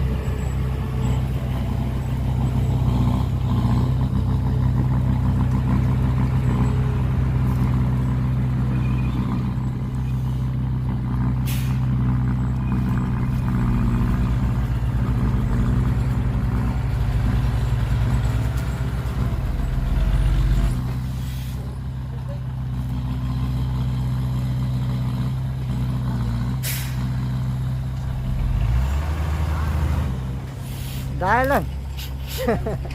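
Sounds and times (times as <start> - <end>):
truck diesel engine running: 0.0 - 32.9
air brake hisses: 11.4 - 11.8, 21.2 - 21.6, 26.6 - 27.1, 30.6 - 31.2.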